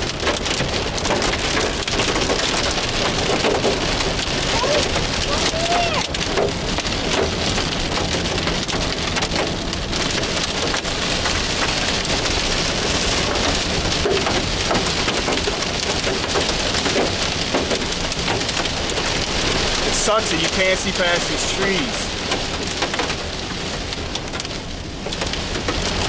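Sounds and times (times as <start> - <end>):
heavy rain on car roof: 0.0 - 26.0.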